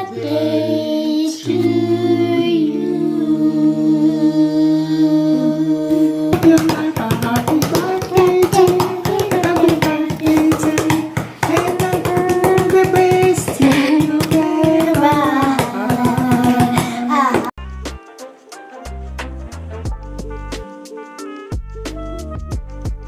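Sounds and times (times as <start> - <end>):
person singing long notes: 0.0 - 17.5.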